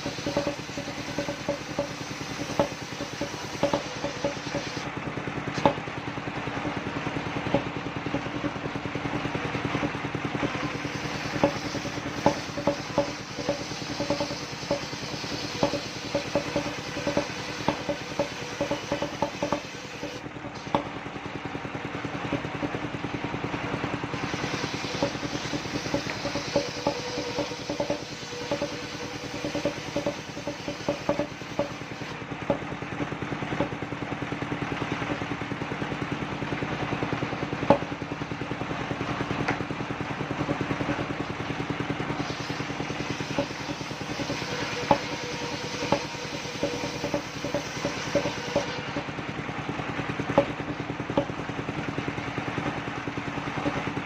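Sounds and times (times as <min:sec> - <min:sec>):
sharp knocks: 0:00.0 - 0:04.8, 0:05.5 - 0:05.8, 0:10.7 - 0:20.9, 0:24.7 - 0:32.7, 0:43.2 - 0:49.1
sawmill engine running: 0:00.0 - 0:54.0.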